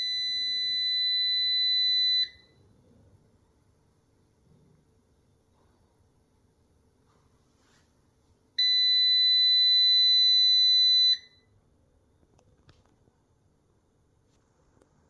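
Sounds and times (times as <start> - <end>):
high-pitched alarm beep: 0.0 - 2.6, 8.6 - 11.5.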